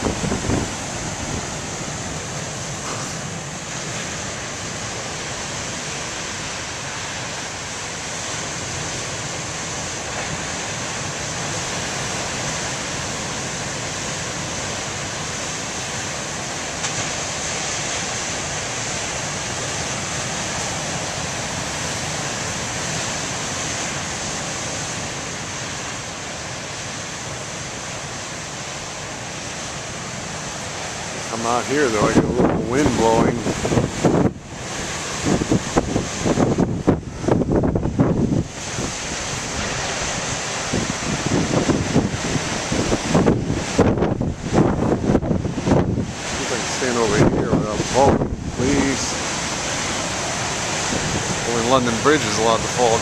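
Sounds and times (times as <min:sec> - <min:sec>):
wind on microphone: 0:00.0 - 0:06.5, 0:31.3 - 0:53.0
ocean waves breaking: 0:00.0 - 0:53.0.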